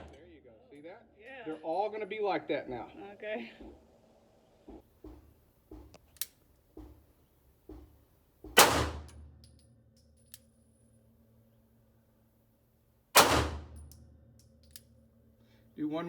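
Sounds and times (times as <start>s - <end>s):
pistol gunshots: 8.6s - 9.3s, 13.2s - 13.8s.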